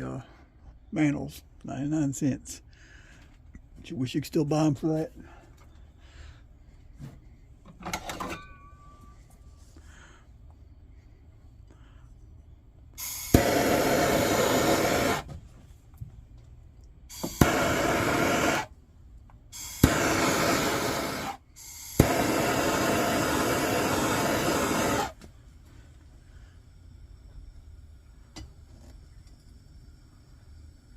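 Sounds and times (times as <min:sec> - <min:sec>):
torch lighter click: 0:13.0 - 0:15.2, 0:17.2 - 0:18.7, 0:19.6 - 0:25.2
torch flame hissing: 0:13.0 - 0:15.4, 0:17.1 - 0:18.7, 0:19.5 - 0:28.2.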